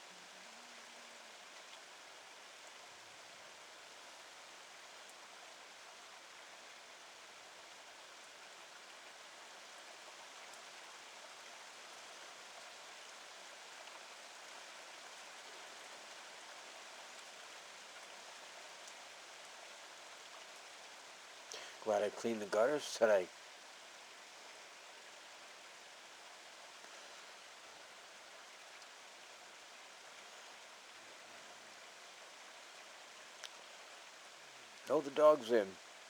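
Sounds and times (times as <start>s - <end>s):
rain hissing: 21.4s - 23.3s, 33.2s - 35.8s.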